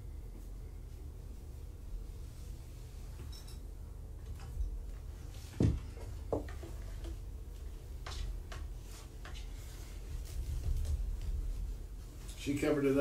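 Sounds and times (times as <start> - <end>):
soft thump: 5.6 - 6.5.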